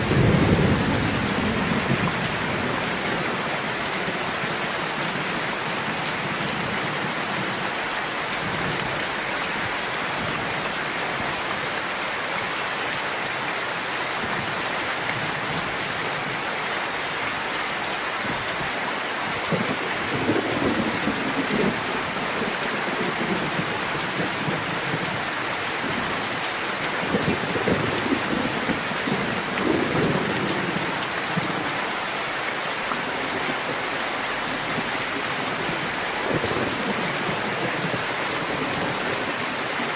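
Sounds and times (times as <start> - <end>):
thunder rumbling: 0.0 - 4.3, 25.8 - 31.7
steady rain: 0.0 - 39.9.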